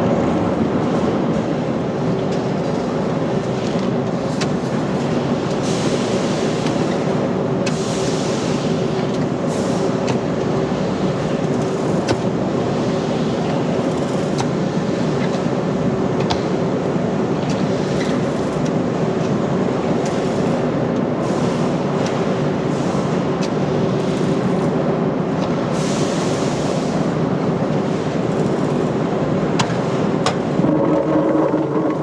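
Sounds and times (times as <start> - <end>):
machinery humming: 27.0 - 32.0.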